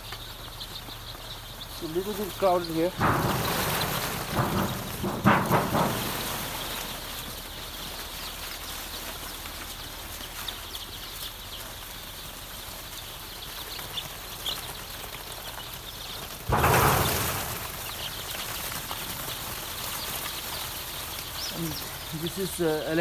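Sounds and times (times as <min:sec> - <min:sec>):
chicks peeping: 0:00.0 - 0:23.0
loud rustle: 0:02.1 - 0:11.7, 0:14.5 - 0:23.0.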